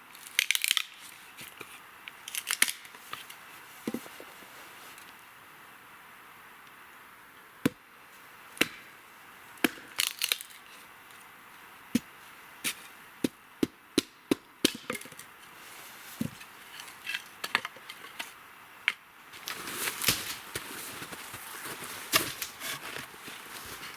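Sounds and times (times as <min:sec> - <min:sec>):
hatchet chopping wood: 0:08.6 - 0:08.8, 0:09.6 - 0:10.0, 0:13.2 - 0:15.1.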